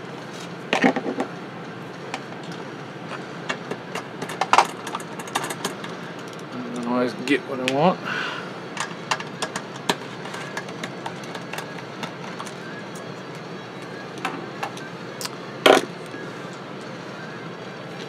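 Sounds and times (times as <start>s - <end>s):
small parts clicking and tapping: 3.5s - 6.9s, 8.8s - 13.4s.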